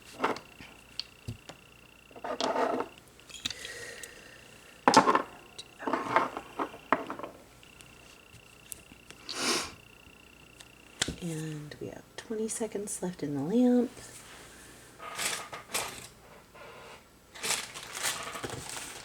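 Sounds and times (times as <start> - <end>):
small items clattering on table: 2.1 - 3.6, 4.9 - 7.4, 17.4 - 19.0.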